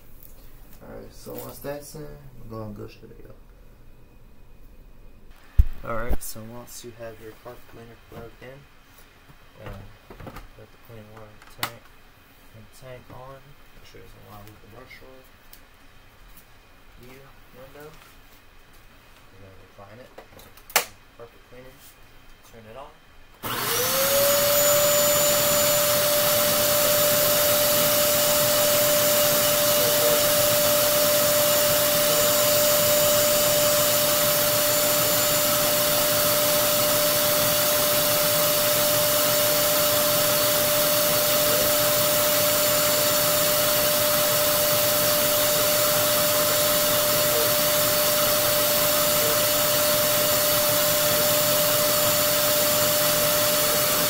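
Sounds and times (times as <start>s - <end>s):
carpet cleaner motor whining: 23.4s - 54.0s.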